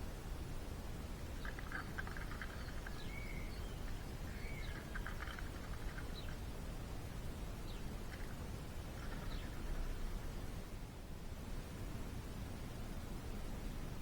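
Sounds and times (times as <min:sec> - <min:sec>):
steady low rumble: 0:00.0 - 0:14.0
small birds chattering: 0:01.3 - 0:06.6, 0:07.6 - 0:10.1.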